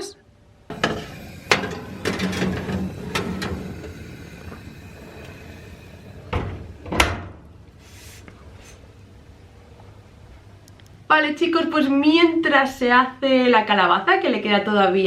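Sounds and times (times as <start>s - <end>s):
baking tray clattering: 0.7s - 5.4s
oven door opening and shutting: 0.7s - 7.5s.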